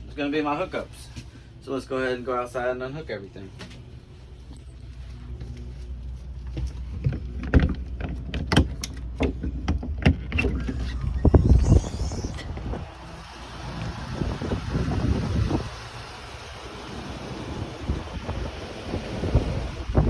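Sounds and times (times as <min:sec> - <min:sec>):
idling engine hum: 0:03.7 - 0:20.0
wind buffeting microphone: 0:09.7 - 0:20.0.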